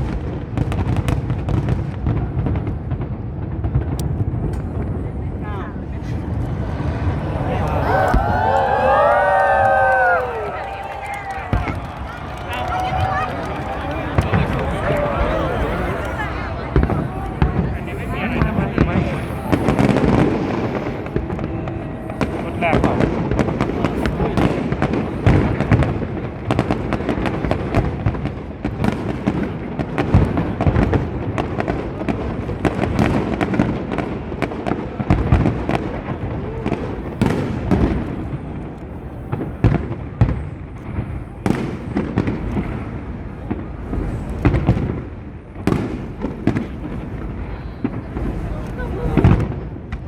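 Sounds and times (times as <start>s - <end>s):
fireworks bangs and booms: 0.0s - 50.0s
fireworks crackling: 0.0s - 50.0s.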